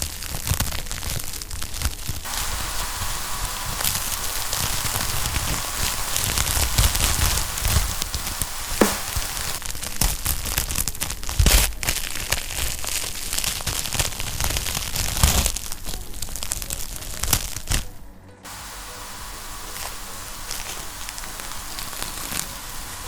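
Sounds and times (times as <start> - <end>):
wood fire crackling: 1.4 - 10.4, 18.7 - 23.0
fire hissing: 2.1 - 9.6, 18.5 - 23.0
sharp pops of fire: 3.6 - 9.6.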